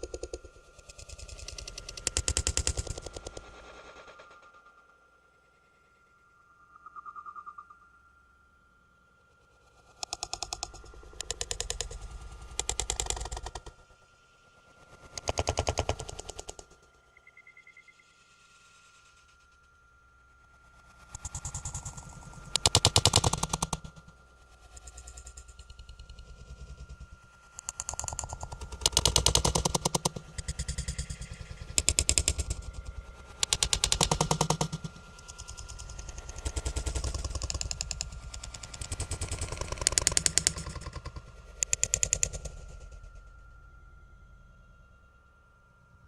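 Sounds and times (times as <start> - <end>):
faint steady high tone: 4.5 - 9.8, 16.9 - 20.8, 42.4 - 46.0.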